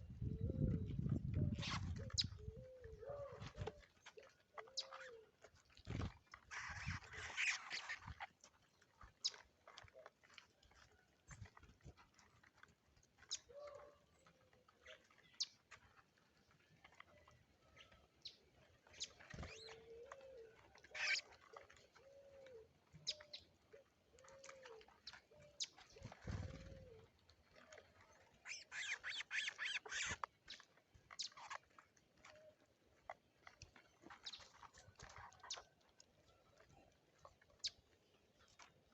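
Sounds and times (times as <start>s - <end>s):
dove cooing: 0.0s - 3.8s, 4.6s - 5.2s, 19.3s - 21.2s, 22.0s - 27.1s
birds chirping: 28.4s - 30.6s.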